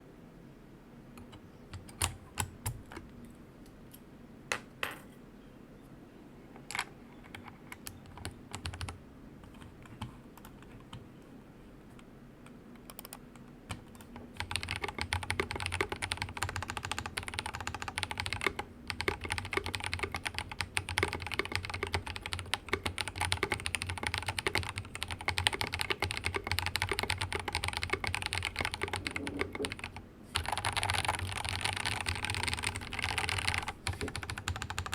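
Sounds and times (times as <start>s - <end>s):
mechanical keyboard typing: 7.3s - 11.0s, 12.8s - 34.9s.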